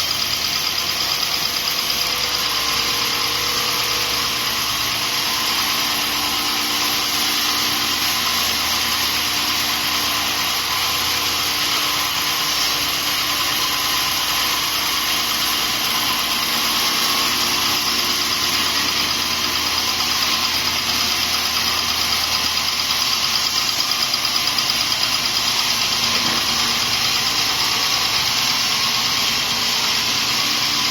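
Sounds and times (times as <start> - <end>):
band sawmill running: 0.0 - 30.9.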